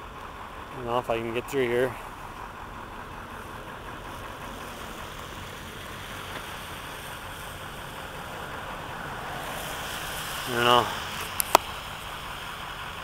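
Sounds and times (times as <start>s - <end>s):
vehicle engine idling: 0.0s - 13.0s
background hiss: 3.3s - 13.0s.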